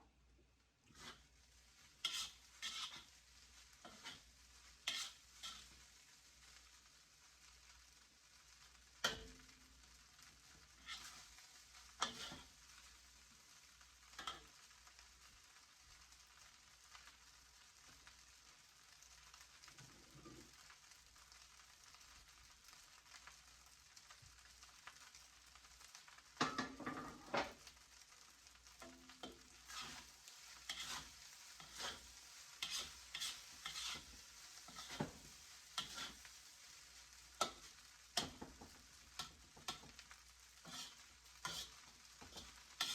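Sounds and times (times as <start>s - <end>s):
rice sizzling in a pan: 0.0s - 42.9s
utensil scraping and tapping pan: 0.9s - 1.2s, 2.0s - 3.2s, 3.8s - 5.8s, 9.0s - 9.6s, 10.5s - 11.3s, 11.9s - 12.5s, 14.1s - 14.6s, 26.4s - 27.6s, 28.8s - 36.3s, 37.4s - 42.9s.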